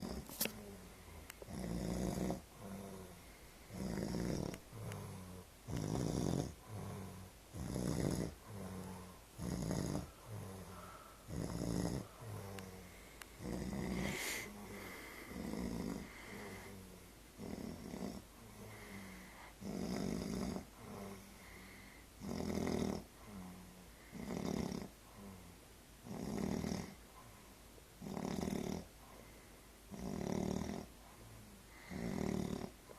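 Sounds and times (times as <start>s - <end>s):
person snoring loudly: 1.5s - 3.1s, 3.7s - 10.7s, 11.3s - 12.6s, 13.4s - 21.2s, 22.2s - 24.9s, 26.1s - 26.9s, 28.0s - 28.9s, 29.9s - 30.9s, 31.9s - 32.7s.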